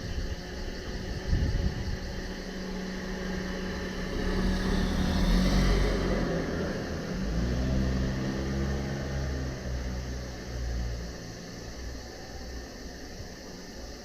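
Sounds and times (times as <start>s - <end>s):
vehicle passing: 2.7s - 10.5s.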